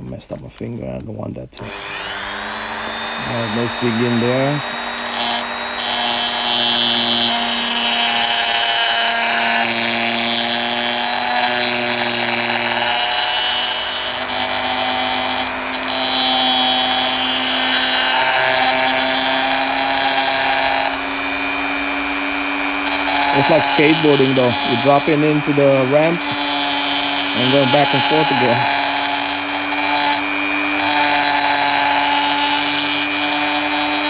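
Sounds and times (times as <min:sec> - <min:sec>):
small power tool grinding: 0:01.4 - 0:34.0.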